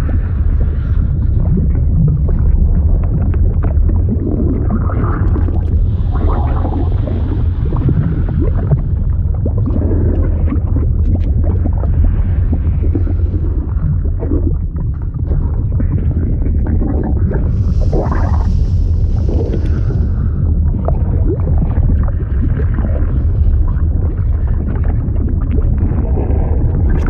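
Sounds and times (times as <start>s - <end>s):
liquid gurgling and bubbling: 0.0s - 27.0s.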